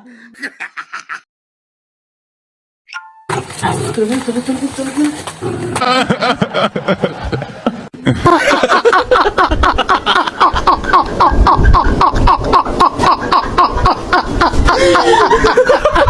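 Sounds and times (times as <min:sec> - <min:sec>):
person laughing hard: 0:00.0 - 0:01.3, 0:05.8 - 0:16.0.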